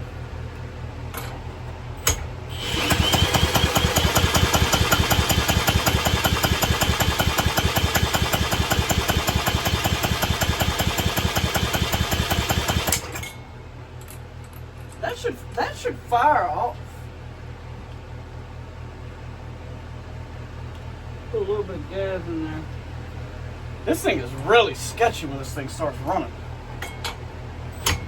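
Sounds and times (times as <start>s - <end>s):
electric drill whine: 2.5s - 8.9s
small engine pulsing: 2.5s - 13.3s.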